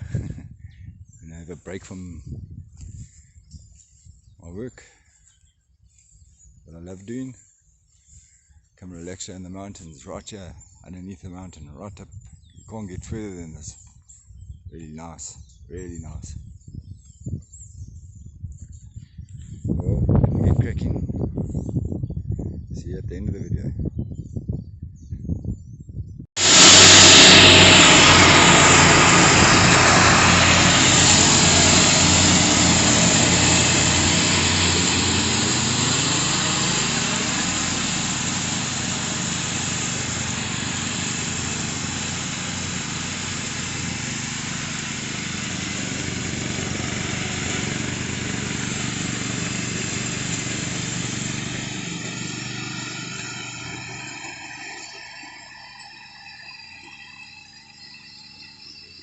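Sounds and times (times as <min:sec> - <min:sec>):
small petrol engine running: 0:26.4 - 0:59.0.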